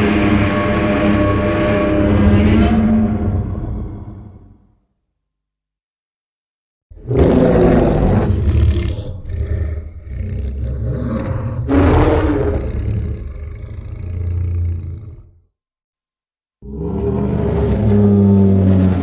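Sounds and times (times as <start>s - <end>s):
monster roar: 7.0s - 15.4s, 16.6s - 19.0s.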